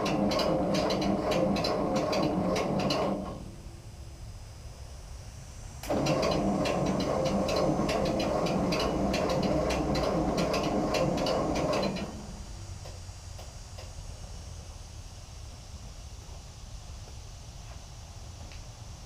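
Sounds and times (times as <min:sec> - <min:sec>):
tractor engine cranking: 0:00.0 - 0:03.6, 0:05.8 - 0:12.6.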